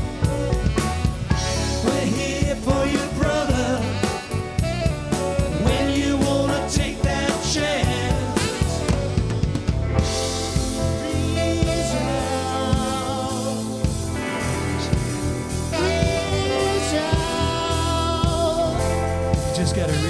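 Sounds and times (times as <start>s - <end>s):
drum kit beat: 0.0s - 20.0s
live rock band playing: 0.0s - 20.0s.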